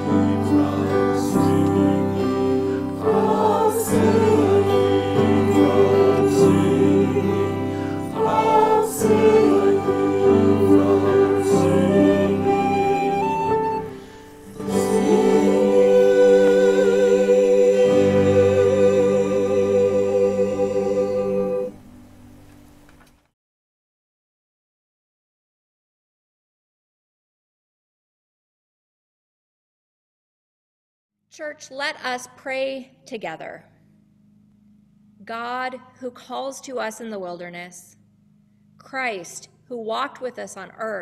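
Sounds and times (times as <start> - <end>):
church singing with instruments: 0.0 - 22.2.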